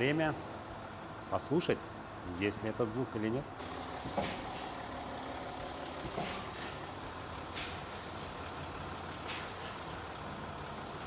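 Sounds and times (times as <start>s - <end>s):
car engine and road noise: 3.6s - 11.0s.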